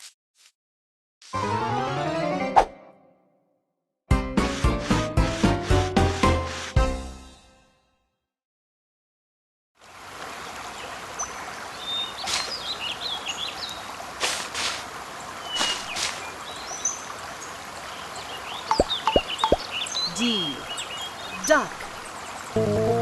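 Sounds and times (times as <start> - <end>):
running water: 9.8 - 23.0
small birds chirping: 10.4 - 13.9, 15.2 - 22.9.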